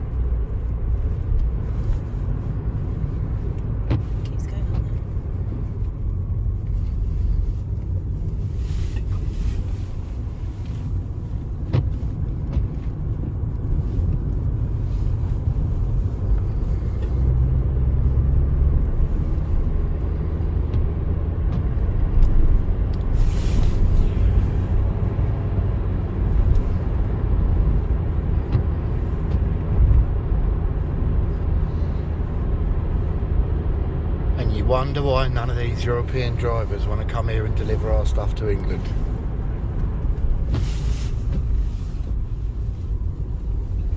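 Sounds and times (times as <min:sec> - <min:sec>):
vehicle road and engine rumble: 0:00.0 - 0:43.9.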